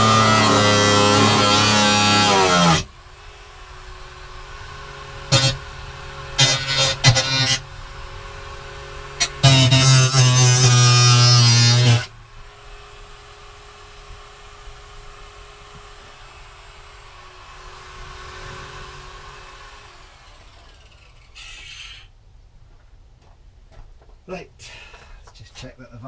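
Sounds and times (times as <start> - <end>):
power tool buzzing motor: 0.0 - 22.1
low steady hum: 0.0 - 26.0
short scraping noise: 21.0 - 22.1.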